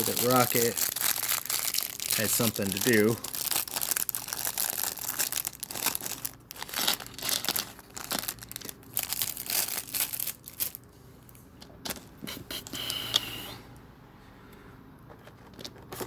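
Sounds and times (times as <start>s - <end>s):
plastic crinkling: 0.0s - 10.9s.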